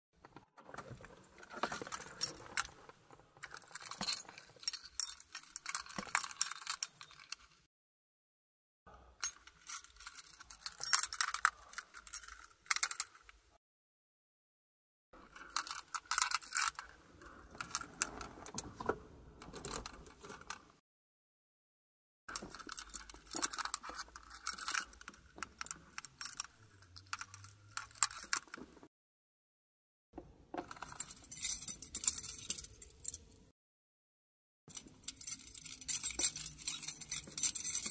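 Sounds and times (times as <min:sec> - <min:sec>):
car keys jangling: 0:30.8 - 0:33.2, 0:34.7 - 0:37.9.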